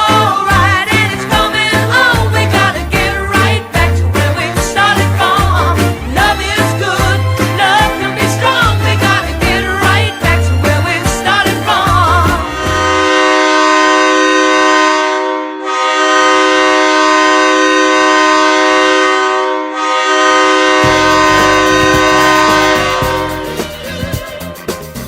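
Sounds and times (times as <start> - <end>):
music with a beat: 0.0 - 13.0, 20.8 - 25.0
goal horn blasts: 12.4 - 24.7.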